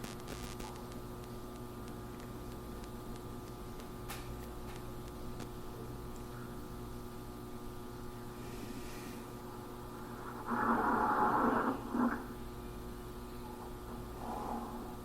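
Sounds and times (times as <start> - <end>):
electrical hum: 0.0 - 15.0.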